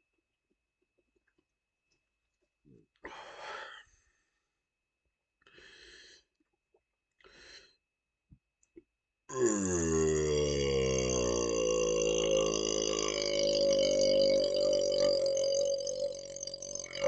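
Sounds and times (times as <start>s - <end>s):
loud low burp: 9.3s - 17.0s.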